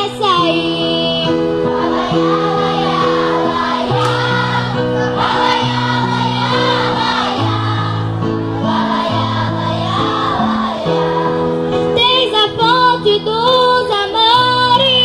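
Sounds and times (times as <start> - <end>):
choir singing: 1.3 - 12.0.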